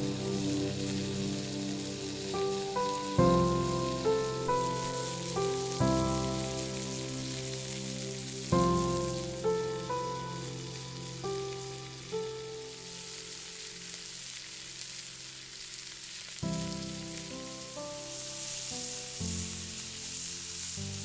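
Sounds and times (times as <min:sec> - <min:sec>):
soft music with sustained chords: 0:00.0 - 0:14.1, 0:16.4 - 0:21.0
meat sizzling on a grill: 0:00.0 - 0:21.0.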